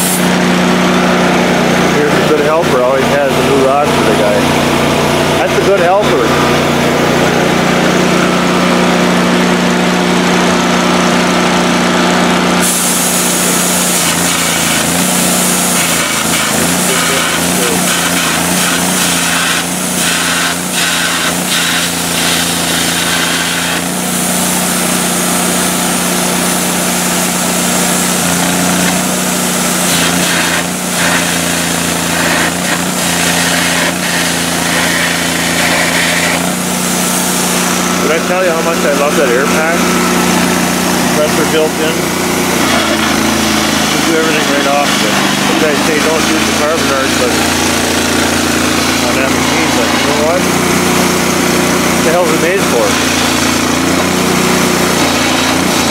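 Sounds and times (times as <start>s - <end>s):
welder engine running: 0.0s - 55.9s
electric arc crackling: 12.6s - 38.1s.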